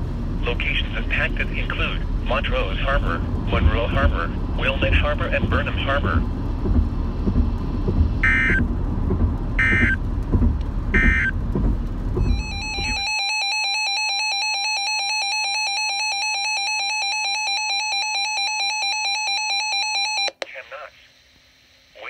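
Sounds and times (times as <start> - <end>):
radio hiss and rumble: 0.0 - 13.1, 20.3 - 22.0
two-tone attention signal: 8.2 - 8.6, 9.6 - 10.0, 11.0 - 11.3, 12.2 - 17.2
digital data bursts: 11.0 - 11.3.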